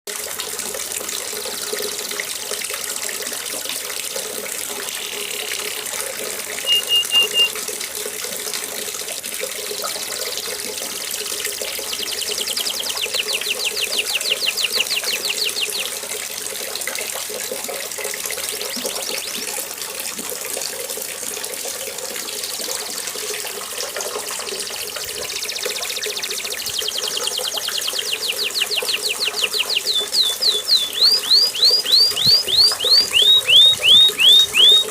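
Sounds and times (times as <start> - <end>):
canary singing: 4.8 - 5.9, 6.5 - 7.6, 11.8 - 16.1, 25.0 - 34.9.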